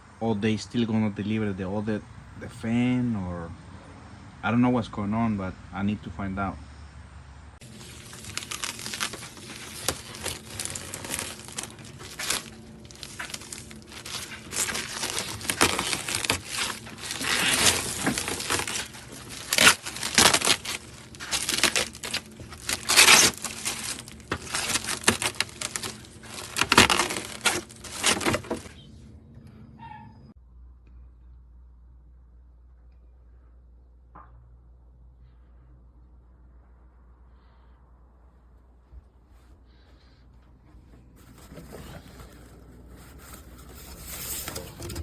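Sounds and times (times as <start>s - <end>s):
packaging crinkling and rustling: 7.6s - 28.9s, 40.9s - 45.0s.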